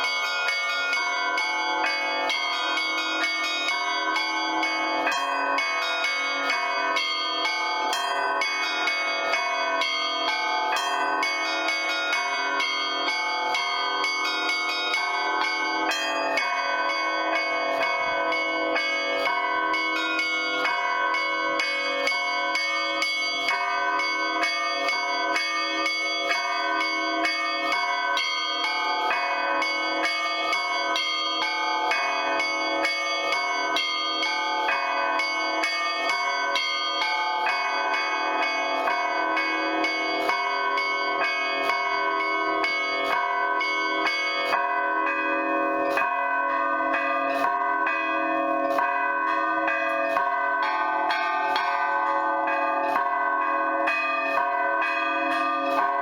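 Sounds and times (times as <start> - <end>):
church bells ringing rapidly: 0.0 - 56.0.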